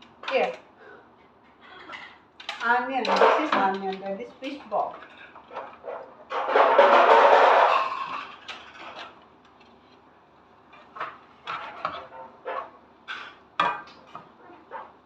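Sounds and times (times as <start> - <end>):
utensils knocking against pan: 2.4 - 9.1.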